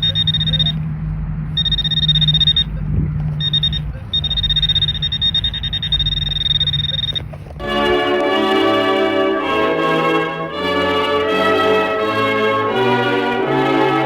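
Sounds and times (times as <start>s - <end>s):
pinpointer high buzzing alert: 0.0s - 0.8s, 1.6s - 2.8s, 3.4s - 7.2s.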